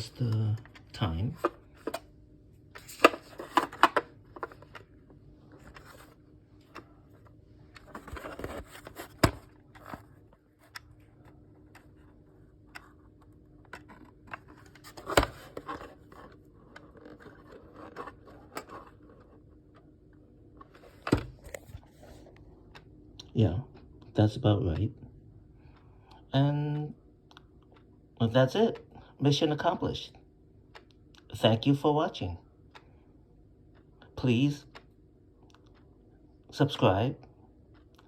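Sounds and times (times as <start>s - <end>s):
alarm clock plastic clicks and scrapes: 0.2s - 2.0s, 2.7s - 4.9s, 5.5s - 19.8s.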